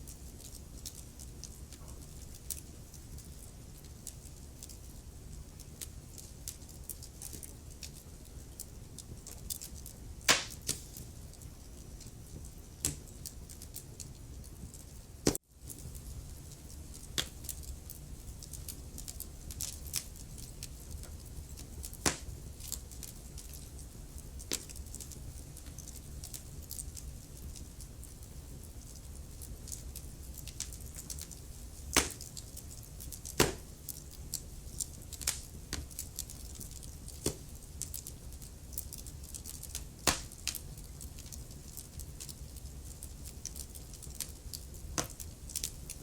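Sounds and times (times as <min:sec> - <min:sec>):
wood fire crackling: 0:00.0 - 0:46.0.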